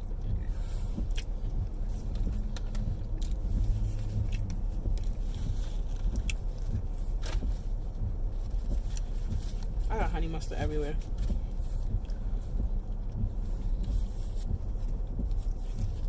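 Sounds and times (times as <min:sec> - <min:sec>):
car interior rumble: 0:00.0 - 0:16.0
crunchy chewing: 0:00.2 - 0:07.4.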